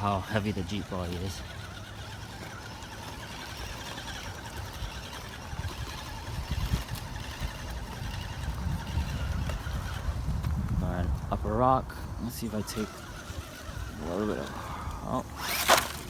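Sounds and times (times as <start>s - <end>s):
electric motor and gears whining: 0.0s - 16.0s.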